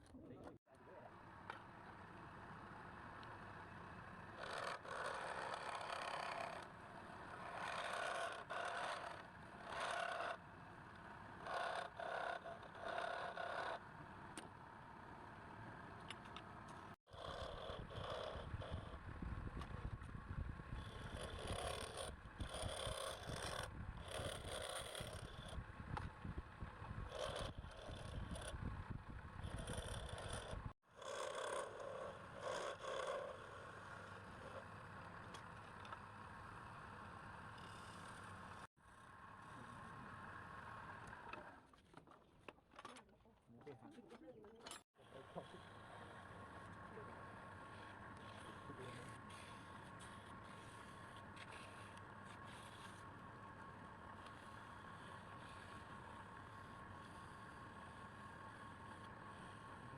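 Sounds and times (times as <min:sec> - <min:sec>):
turning tool scraping wood: 0:20.7 - 0:25.6, 0:27.0 - 0:28.6, 0:29.4 - 0:33.3.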